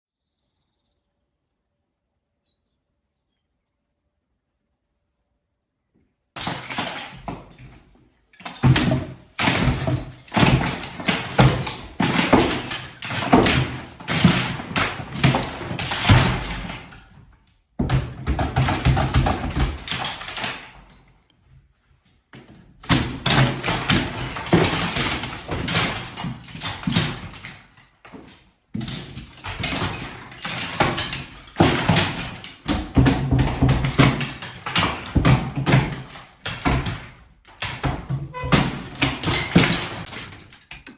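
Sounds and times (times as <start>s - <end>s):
debris falling: 6.4s - 21.1s, 22.8s - 40.9s
plaster being broken off: 22.8s - 40.9s.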